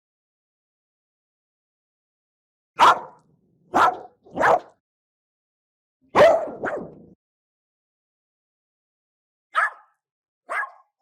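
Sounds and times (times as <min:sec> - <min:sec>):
dog barking angrily: 0:02.8 - 0:04.8, 0:06.1 - 0:07.1, 0:09.6 - 0:09.9, 0:10.5 - 0:10.9.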